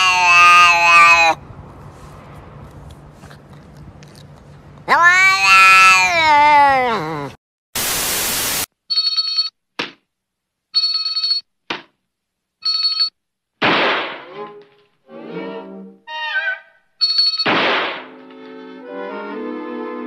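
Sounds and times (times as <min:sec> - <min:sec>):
burst of hiss: 0:07.8 - 0:08.7
noisy burst: 0:07.8 - 0:08.7.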